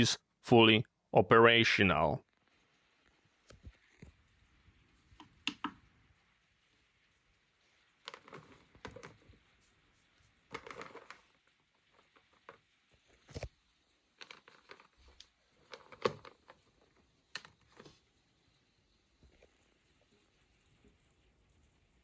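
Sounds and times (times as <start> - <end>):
charger and cable handling: 8.1 - 9.3, 10.5 - 11.3, 14.2 - 18.0.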